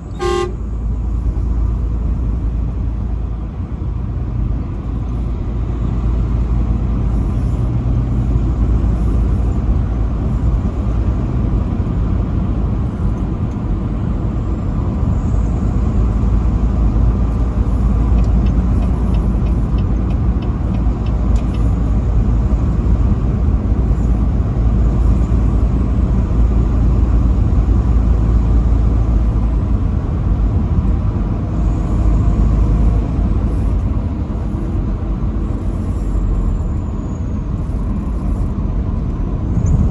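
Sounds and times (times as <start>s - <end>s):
truck engine and road rumble: 0.0s - 39.9s
faint ticks: 18.1s - 21.8s.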